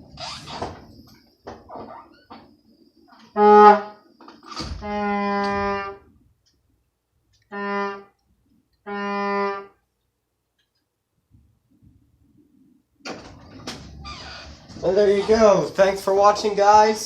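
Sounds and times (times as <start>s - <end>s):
horn blasts: 3.4s - 4.0s, 4.8s - 6.1s, 7.5s - 8.2s, 8.8s - 9.8s.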